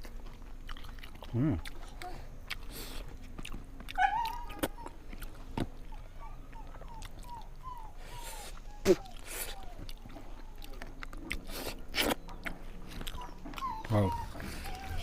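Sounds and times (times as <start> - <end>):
chewing mouth sounds: 0.0 - 15.0
dog whimpering: 3.9 - 11.0, 12.9 - 15.0.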